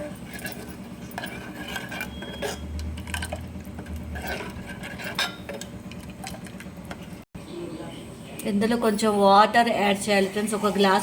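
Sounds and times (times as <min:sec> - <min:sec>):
utensils clinking against pot: 0:00.0 - 0:07.1.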